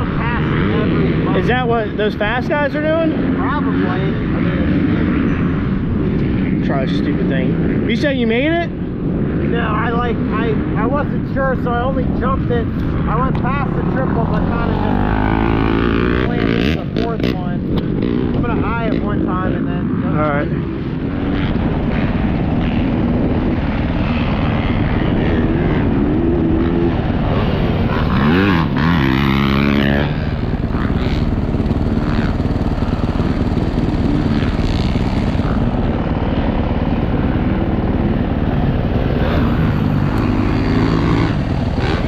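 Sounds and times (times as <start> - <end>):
motorcycle engine revving: 11.8 - 42.0.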